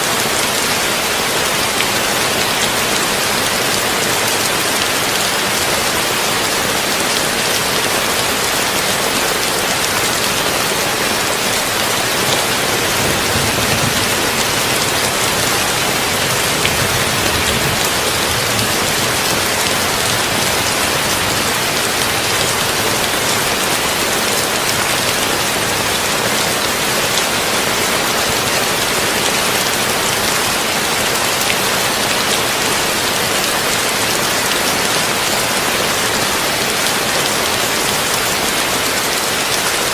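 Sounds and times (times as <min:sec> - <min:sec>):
heavy rain on a tin roof: 0:00.0 - 0:39.9.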